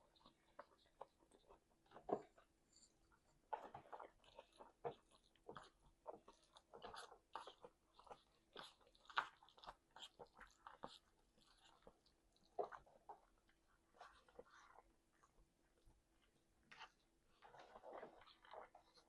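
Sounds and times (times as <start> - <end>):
person chewing and biting food: 3.6 - 13.4.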